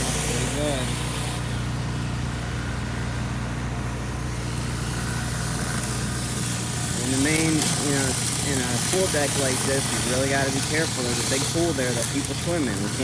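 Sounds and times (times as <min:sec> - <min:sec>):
high-pressure water spraying: 0:00.0 - 0:13.0
pressure washer engine running: 0:00.0 - 0:13.0.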